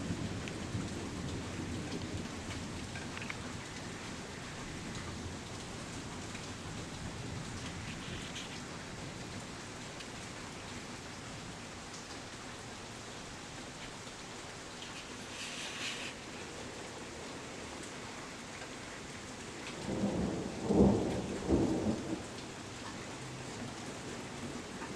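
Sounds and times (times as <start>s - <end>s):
steady rain hissing: 0.0s - 24.9s.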